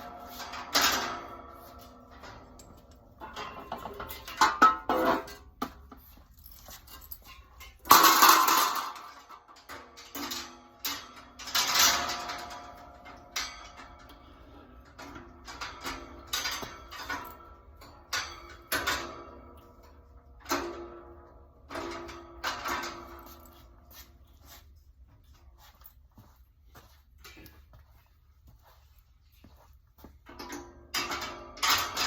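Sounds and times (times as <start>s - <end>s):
metal rack parts clanking: 0.0s - 5.6s, 6.5s - 23.8s, 30.3s - 32.0s.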